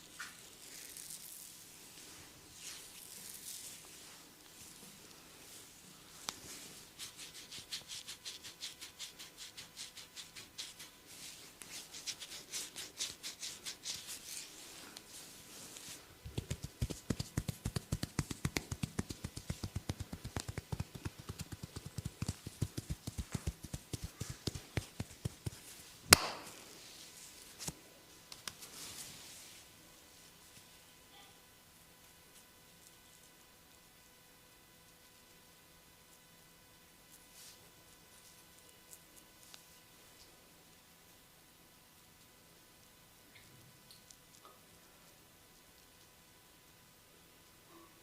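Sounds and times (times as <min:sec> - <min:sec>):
hands rubbing skin: 0:00.2 - 0:05.6, 0:06.2 - 0:26.5, 0:27.2 - 0:29.5
hands tapping on body: 0:16.3 - 0:26.4
loud sharp crack: 0:26.1 - 0:26.6.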